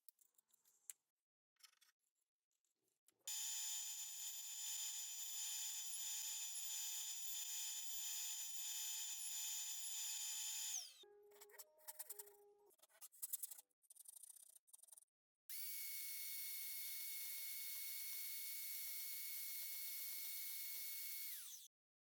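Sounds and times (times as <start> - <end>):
power tool motor whining: 19.5 - 21.7.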